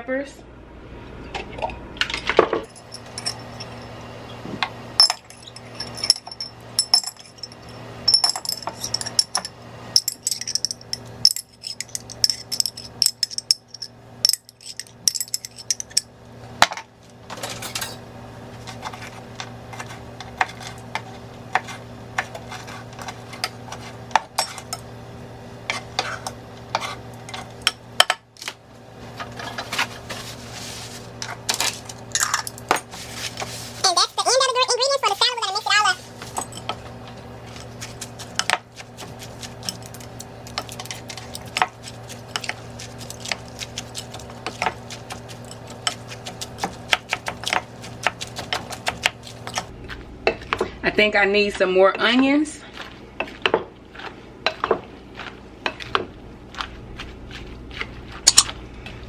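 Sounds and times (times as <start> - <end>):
steady low hum: 0.0 - 59.0
metal utensils clinking on bowl: 2.6 - 3.9, 5.0 - 16.1.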